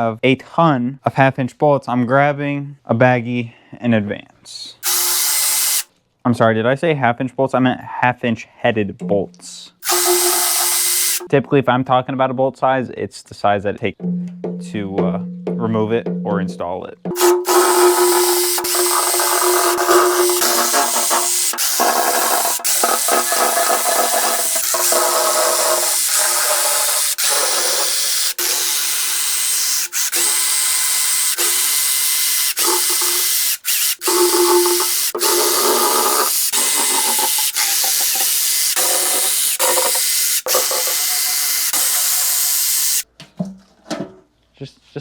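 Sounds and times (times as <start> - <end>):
cordless power drill running: 4.8 - 5.9, 9.8 - 11.3, 17.1 - 43.0.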